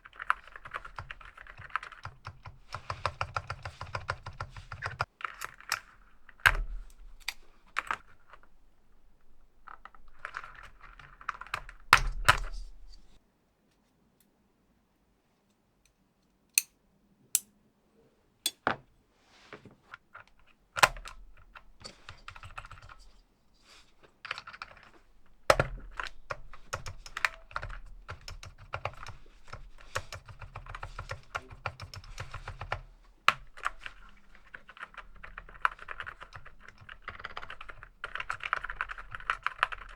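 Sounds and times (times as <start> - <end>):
mechanical keyboard typing: 0.0 - 13.0, 20.4 - 23.2, 24.2 - 39.9.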